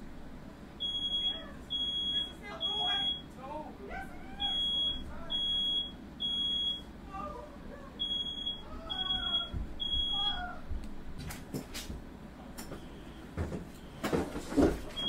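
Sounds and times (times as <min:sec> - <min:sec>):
smoke alarm beeping: 0:00.8 - 0:03.3, 0:04.4 - 0:06.9, 0:08.0 - 0:10.4.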